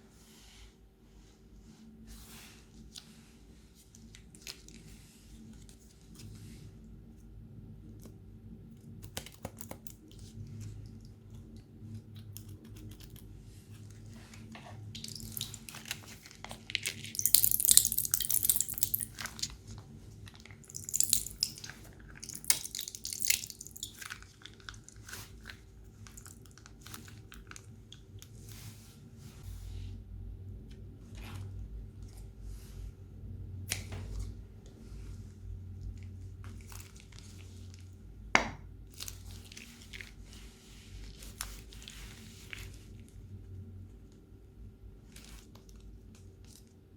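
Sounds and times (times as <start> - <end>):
faint low hum: 0.0 - 46.9
slime squishing: 8.9 - 29.0, 33.6 - 43.3.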